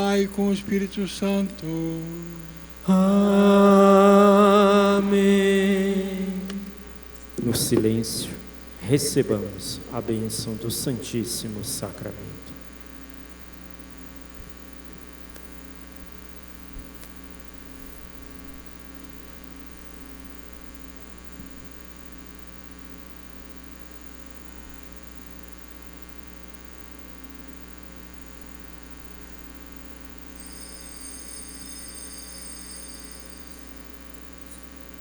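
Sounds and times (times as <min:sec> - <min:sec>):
electrical mains hum: 0:00.0 - 0:35.0
high steady ringing: 0:30.2 - 0:35.0.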